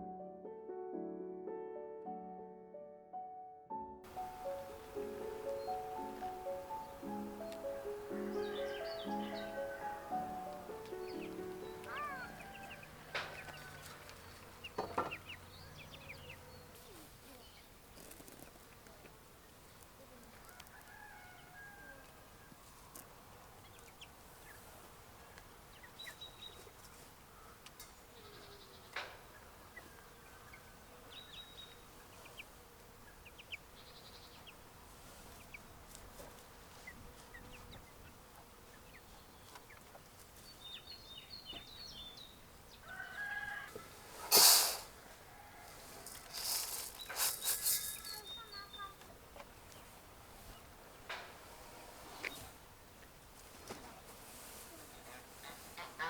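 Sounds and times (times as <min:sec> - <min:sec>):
chirps and clucks: 0:06.6 - 0:17.6, 0:25.3 - 0:35.7, 0:36.3 - 0:44.2
goats or chickens calling: 0:08.3 - 0:14.1.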